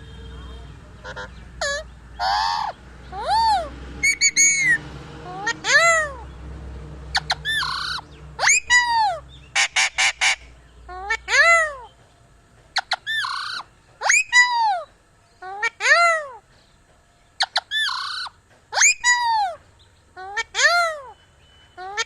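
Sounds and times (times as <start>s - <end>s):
parrot squawking: 1.0s - 6.3s, 7.1s - 11.9s, 12.8s - 16.4s, 17.4s - 19.6s, 20.2s - 21.2s, 21.8s - 22.0s.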